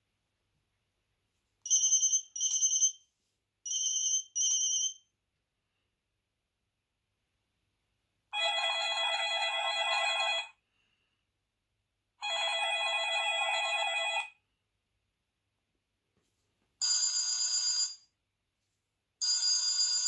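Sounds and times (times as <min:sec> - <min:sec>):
phone ringtone: 0:01.7 - 0:03.0, 0:03.7 - 0:05.0, 0:08.4 - 0:10.5, 0:12.2 - 0:14.4, 0:16.8 - 0:18.1, 0:19.2 - 0:20.0.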